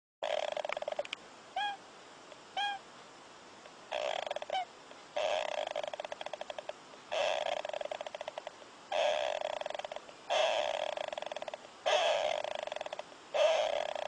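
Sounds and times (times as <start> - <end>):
animal snoring: 0.2 - 1.2, 3.9 - 4.6, 5.2 - 14.0.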